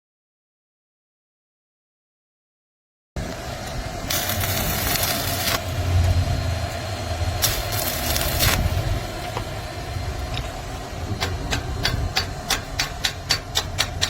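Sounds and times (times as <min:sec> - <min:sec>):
welder hum: 0:03.2 - 0:14.0
welding arc crackling hiss: 0:03.2 - 0:14.0.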